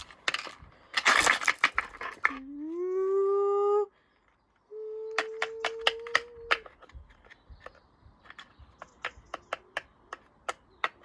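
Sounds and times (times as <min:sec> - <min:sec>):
loose parts clattering inside: 0:00.0 - 0:02.4.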